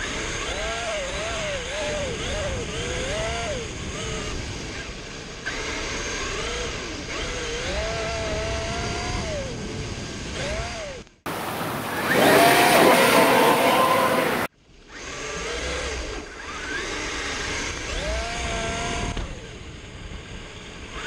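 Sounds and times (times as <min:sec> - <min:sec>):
electric motor whining: 0:00.0 - 0:21.0
noisy hiss: 0:11.3 - 0:13.0.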